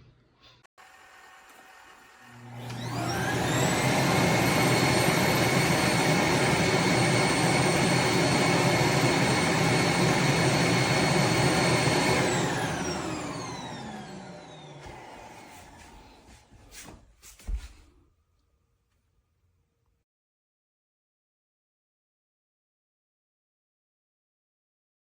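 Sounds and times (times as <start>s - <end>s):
vacuum suction motor whining: 0.8s - 16.6s.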